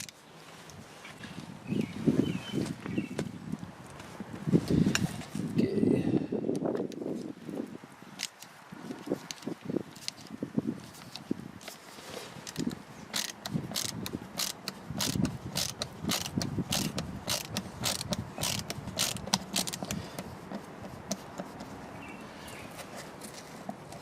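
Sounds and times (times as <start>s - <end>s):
ratchet screwdriver clicking: 8.2s - 8.5s, 12.5s - 20.3s.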